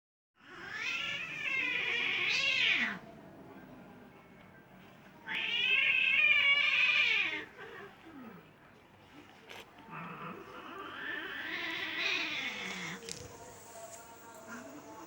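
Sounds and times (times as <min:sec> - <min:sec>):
cats yowling: 0:00.4 - 0:03.1, 0:05.2 - 0:08.4, 0:09.9 - 0:13.1.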